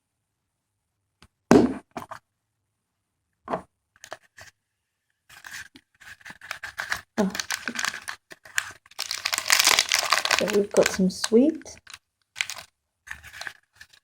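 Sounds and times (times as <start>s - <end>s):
wrapping crinkling: 5.3s - 14.0s
plastic egg cracking open: 5.6s - 14.0s.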